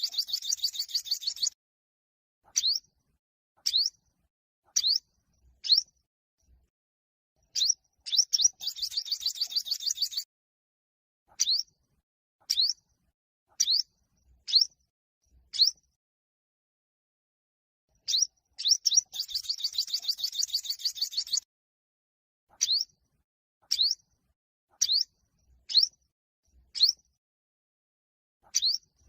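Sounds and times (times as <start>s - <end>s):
fast bird trill: 0.0s - 1.6s, 2.5s - 2.8s, 3.6s - 3.9s, 7.5s - 10.3s, 11.4s - 11.7s, 15.5s - 15.8s, 18.0s - 21.4s, 22.6s - 22.9s, 23.7s - 24.0s, 24.8s - 25.1s, 25.7s - 25.9s, 26.8s - 27.0s, 28.5s - 29.0s
high upward-sweeping bird chirps: 0.0s - 1.6s, 2.5s - 2.9s, 3.6s - 4.0s, 4.8s - 6.0s, 7.5s - 10.3s, 11.3s - 11.8s, 12.5s - 12.8s, 13.5s - 14.8s, 15.5s - 15.9s, 18.0s - 21.5s, 22.5s - 23.0s, 23.7s - 24.1s, 24.8s - 26.0s, 26.7s - 27.0s, 28.4s - 29.0s.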